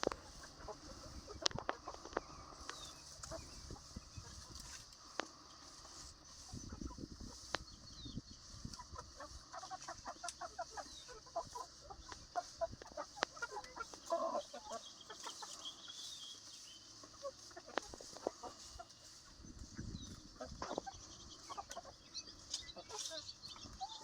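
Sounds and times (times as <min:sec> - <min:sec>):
chickens clucking: 0:00.0 - 0:24.0
chicken call: 0:08.7 - 0:16.4.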